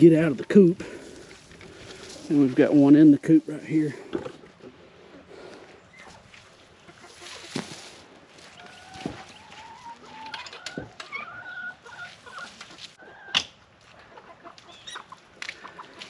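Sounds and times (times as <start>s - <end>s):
chickens clucking and calling: 3.8s - 16.0s.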